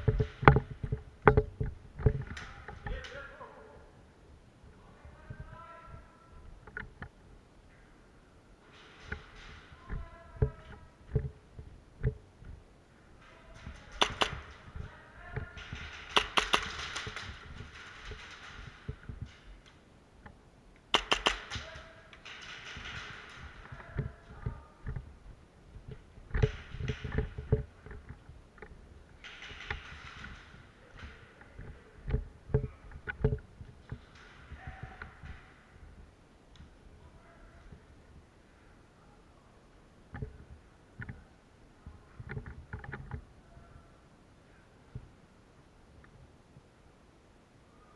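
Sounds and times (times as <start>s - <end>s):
rustling: 0.0s - 47.9s
airsoft guns firing: 15.4s - 19.4s, 21.0s - 24.1s, 29.2s - 31.7s
faint sharp clicks: 19.6s - 22.2s.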